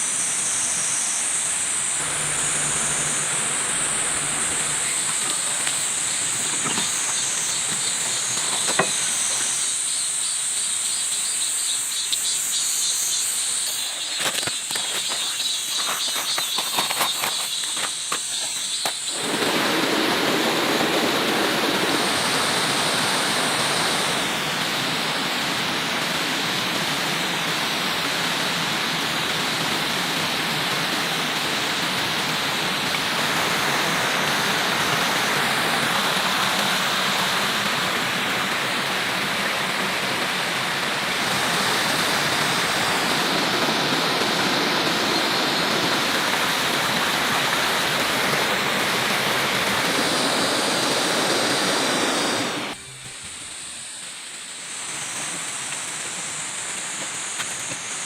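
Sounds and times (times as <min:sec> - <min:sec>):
night insects chirring: 0:00.0 - 0:28.7
steady even hiss: 0:00.0 - 0:58.0.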